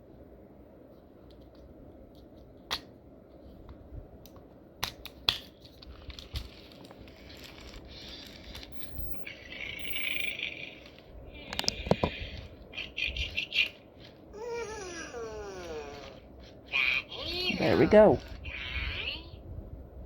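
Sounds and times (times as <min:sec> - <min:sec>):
hard plastic clicking and scraping: 0:10.9 - 0:12.5.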